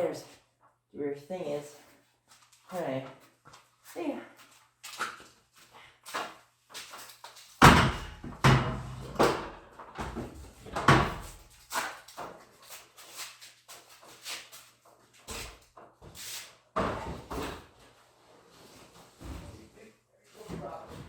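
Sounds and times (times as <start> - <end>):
ladder banging against stairs: 7.6 - 11.9.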